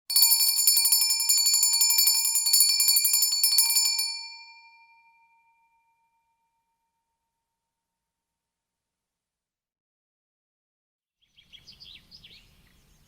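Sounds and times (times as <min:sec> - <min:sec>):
hand bell ringing rapidly: 0:00.1 - 0:05.2.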